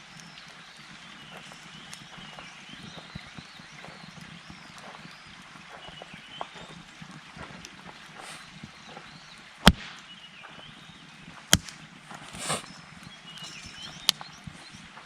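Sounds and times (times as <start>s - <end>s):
campfire crackling: 0.0s - 15.0s
wood popping in fire: 0.0s - 15.0s
fire hiss: 7.1s - 15.0s.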